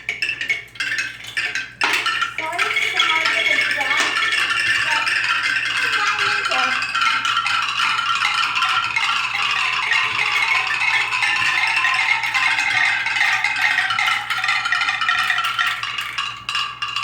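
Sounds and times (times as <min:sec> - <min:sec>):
marbles clattering: 0:00.0 - 0:17.0
ringing tones: 0:00.0 - 0:17.0.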